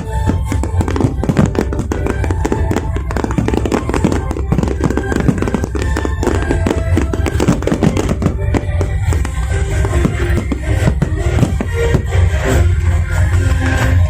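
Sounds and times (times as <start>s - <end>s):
background music: 0.0s - 14.0s
fireworks crackling and popping: 0.0s - 14.0s.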